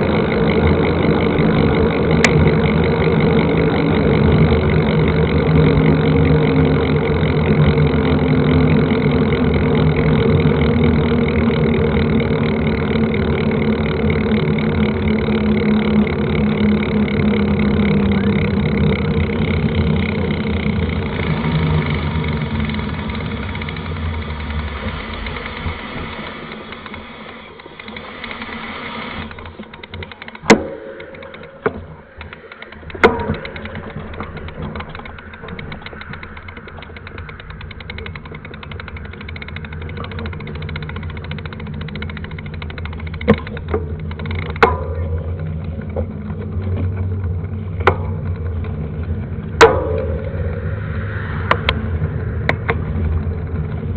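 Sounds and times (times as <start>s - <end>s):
bike freewheel ticking: 0.0s - 53.9s
bike knocking and rattling: 0.0s - 53.9s
tyre and wind rumble: 45.0s - 53.9s.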